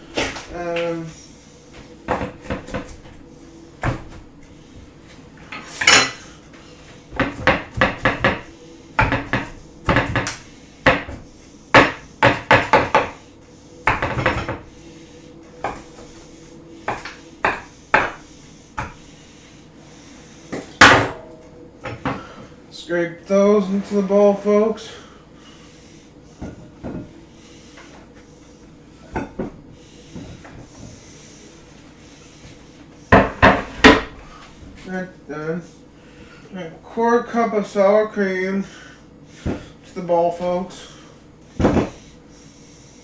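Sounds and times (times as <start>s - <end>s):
knife chopping on cutting board: 7.2s - 13.2s, 13.8s - 14.6s, 15.6s - 16.1s, 16.9s - 18.2s, 18.8s - 19.0s.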